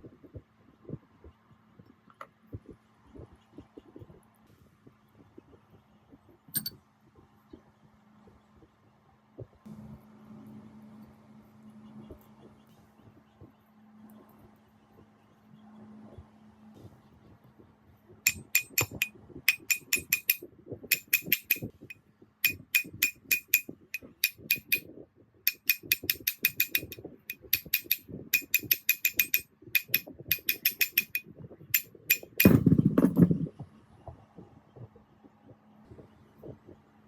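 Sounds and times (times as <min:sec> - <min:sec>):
hammer striking metal: 0:06.6 - 0:06.8, 0:18.3 - 0:24.8, 0:25.5 - 0:31.2, 0:31.8 - 0:32.7.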